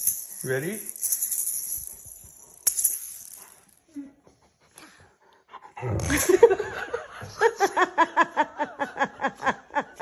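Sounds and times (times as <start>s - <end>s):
person laughing: 6.0s - 10.0s.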